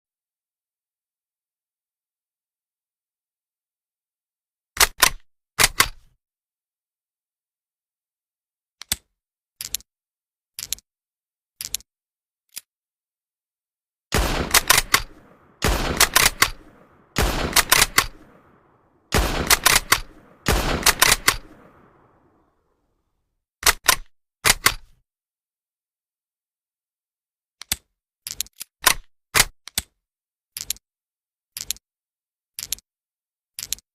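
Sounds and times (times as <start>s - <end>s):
rifle shots echoing: 14.1s - 22.4s
rifle bolt clicks: 14.2s - 22.2s.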